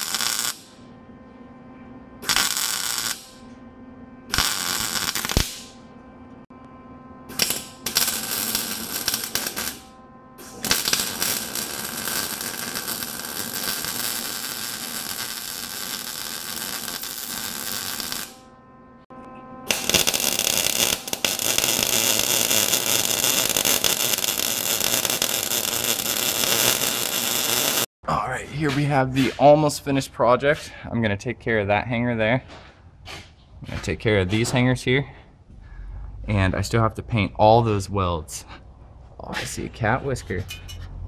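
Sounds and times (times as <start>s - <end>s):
electric welding crackling hiss: 0.0s - 0.8s, 2.2s - 3.4s, 4.3s - 5.8s, 7.3s - 18.4s, 19.7s - 27.9s.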